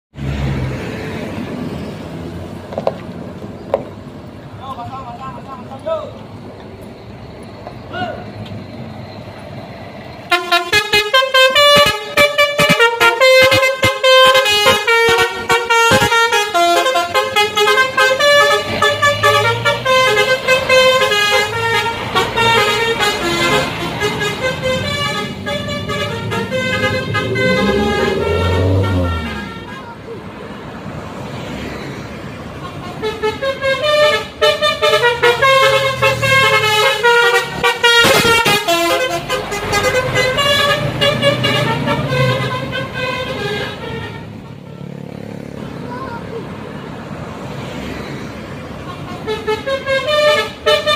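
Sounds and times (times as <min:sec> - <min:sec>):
musical air horn playing tunes: 0:10.3 - 0:29.9, 0:32.6 - 0:44.8, 0:48.9 - 0:50.9.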